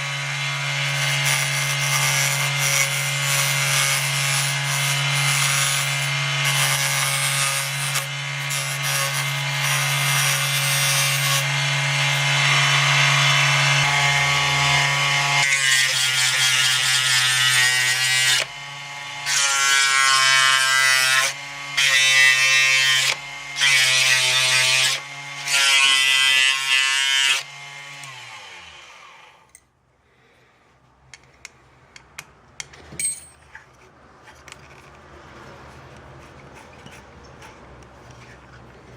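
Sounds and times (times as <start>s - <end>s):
wood scraped on lathe: 33.4s - 38.9s.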